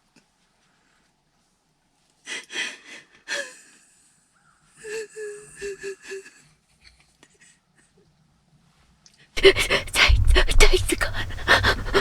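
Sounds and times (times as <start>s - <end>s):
woman whimpering sobs: 4.8s - 6.5s, 9.4s - 12.0s
woman gasping breaths: 9.4s - 12.0s.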